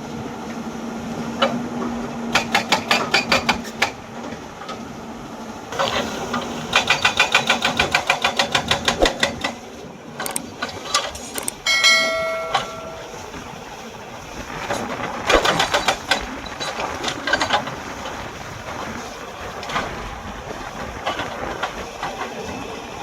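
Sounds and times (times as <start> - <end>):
hydraulic breaker pounding rock: 5.7 - 10.4, 14.7 - 18.2
ringing tone: 11.7 - 13.5.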